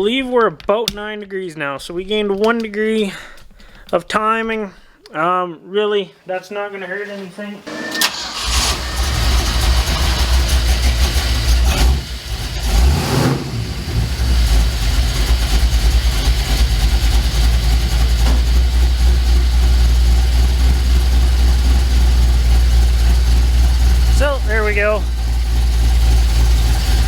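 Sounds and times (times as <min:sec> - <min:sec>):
truck engine idling: 0:06.8 - 0:27.0.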